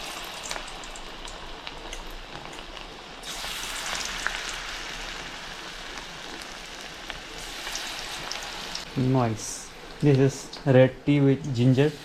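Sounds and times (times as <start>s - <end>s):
fritters sizzling in hot oil: 0.0s - 10.5s.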